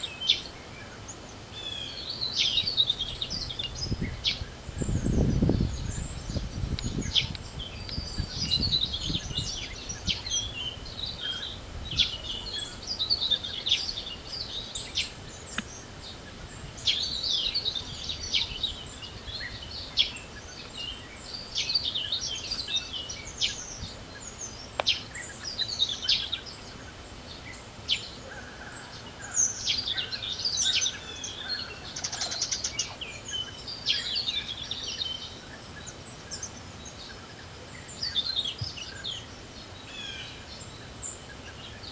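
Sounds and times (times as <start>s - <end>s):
songbirds chirping: 0.0s - 41.9s
low wind rumble: 2.9s - 21.5s.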